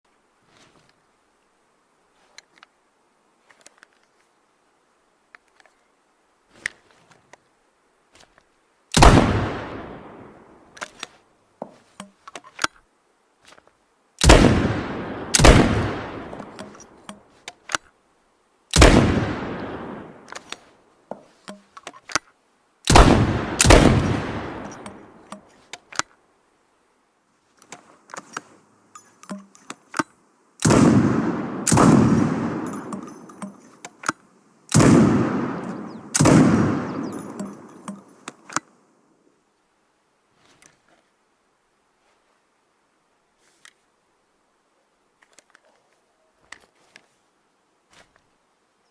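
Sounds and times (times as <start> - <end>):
shotgun blasts: 8.9 - 10.4, 14.2 - 16.8, 18.7 - 20.3, 22.9 - 24.9, 30.6 - 33.1, 34.7 - 38.0.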